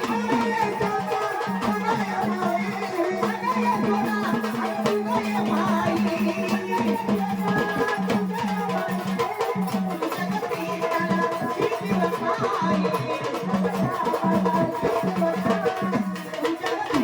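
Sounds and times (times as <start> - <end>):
folk devotional melody: 0.0 - 17.0
hand-drum rhythm: 0.0 - 17.0.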